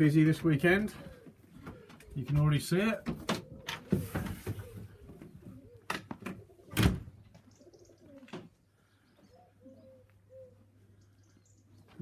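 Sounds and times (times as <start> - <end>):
pigeons cooing: 0.7 - 2.4, 3.0 - 11.4.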